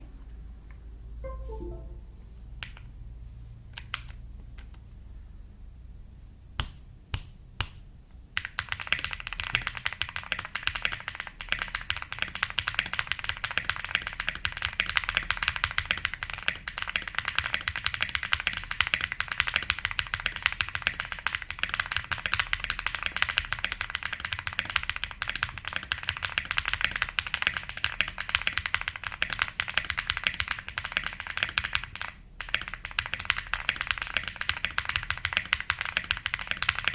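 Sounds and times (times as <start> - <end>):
mechanical keyboard typing: 8.4 - 36.9.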